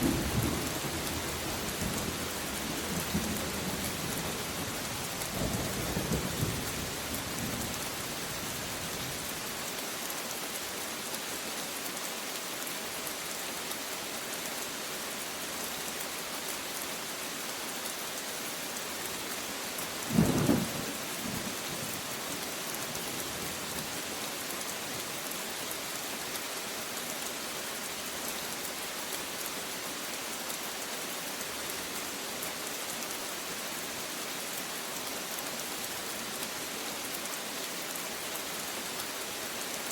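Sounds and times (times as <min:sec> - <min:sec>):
steady rain falling: 0:00.0 - 0:39.9
low rumble of thunder: 0:20.1 - 0:21.7.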